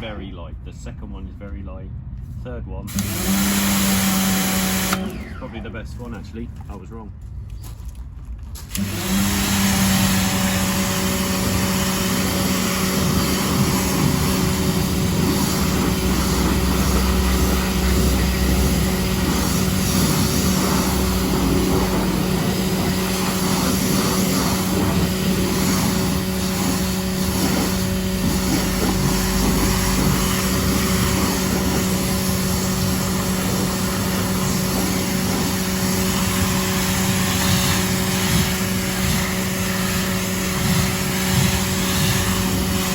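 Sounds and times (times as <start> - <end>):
pressure washer motor humming: 2.9 - 5.8, 8.7 - 42.9
water jet hissing: 8.7 - 42.9.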